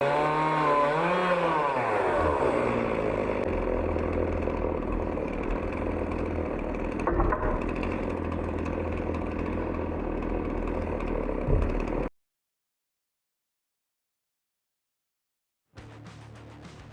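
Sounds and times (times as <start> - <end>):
chainsaw running at high revs: 0.0 - 12.1
knock: 7.1 - 7.6.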